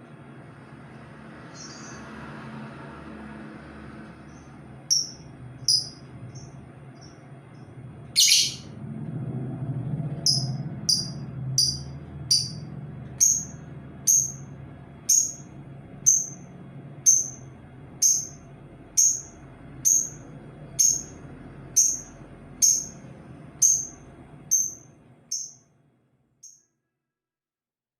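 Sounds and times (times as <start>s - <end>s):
bird calling sharp high note: 8.2s - 8.7s.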